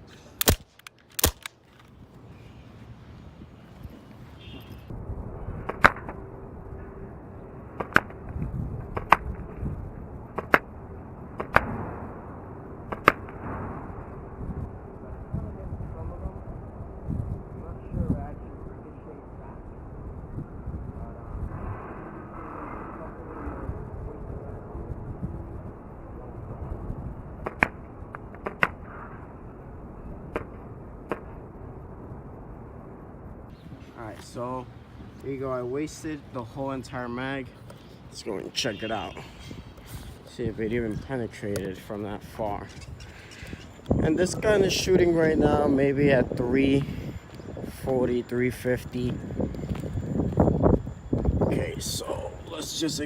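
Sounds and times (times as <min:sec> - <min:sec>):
airsoft pistol shots popping: 0:00.4 - 0:01.5.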